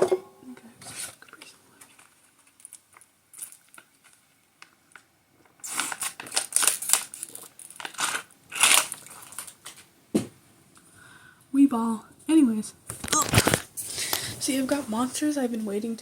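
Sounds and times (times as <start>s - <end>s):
rustling and crinkling handling: 0.8s - 9.9s, 12.9s - 16.0s.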